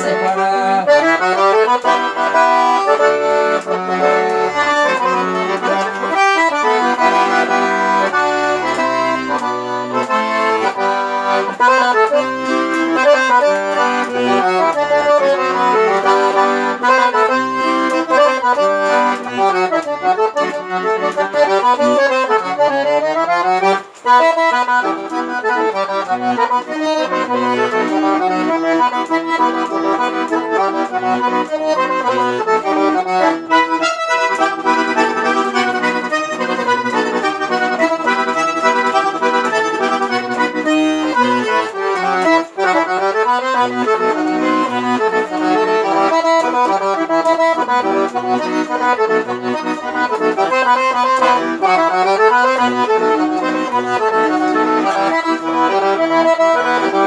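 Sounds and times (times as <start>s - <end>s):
accordion playing: 0.0s - 57.0s.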